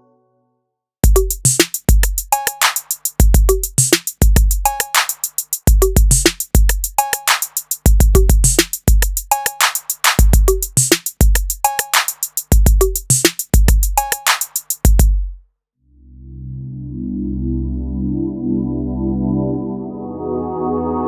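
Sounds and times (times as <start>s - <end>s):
kick drum: 1.0s - 2.3s, 3.2s - 4.8s, 5.7s - 7.0s, 7.9s - 9.3s, 10.2s - 11.6s, 12.5s - 14.2s, 14.8s - 15.4s
fast hi-hat ticks: 1.0s - 15.1s
snare hits with reverb: 1.5s - 3.2s, 4.8s - 5.4s, 7.2s - 7.8s, 9.5s - 12.5s, 14.1s - 15.1s.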